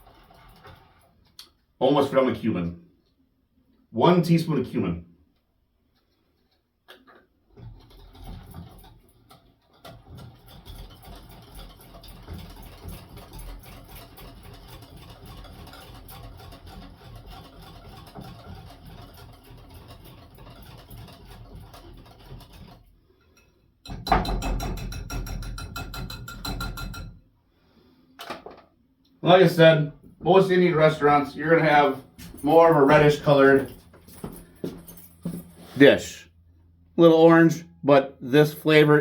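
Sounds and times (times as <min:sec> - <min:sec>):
wire whisk beating in a bowl: 0:09.7 - 0:27.2.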